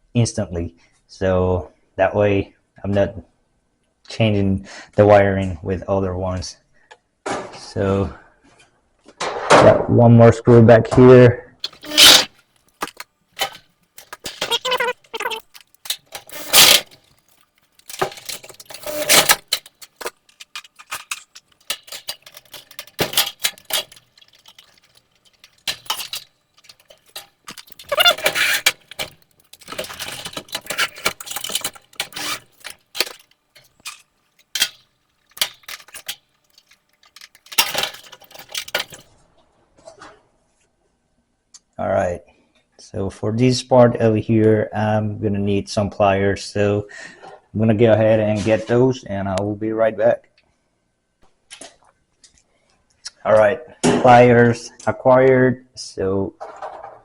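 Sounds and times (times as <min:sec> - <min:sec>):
metallic clinks of hand tools: 0:11.6 - 0:39.0
sheet-metal parts clattering: 0:11.6 - 0:39.0.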